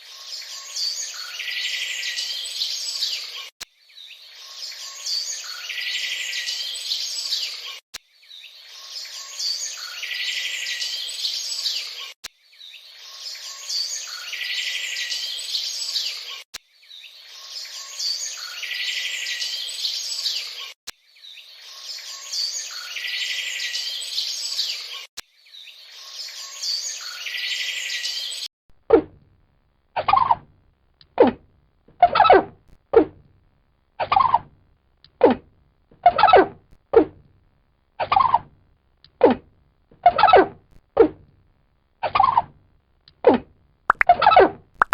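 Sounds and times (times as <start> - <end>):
birds chirping: 0.0 - 28.5.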